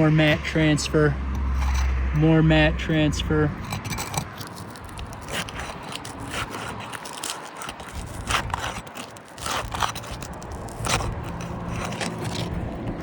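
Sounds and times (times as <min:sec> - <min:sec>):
shingles scraping and crackling: 0:03.6 - 0:13.0.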